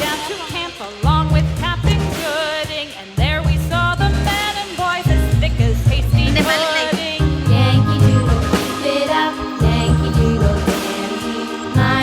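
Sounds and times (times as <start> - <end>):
singing over pulsing bass: 7.3 - 12.0.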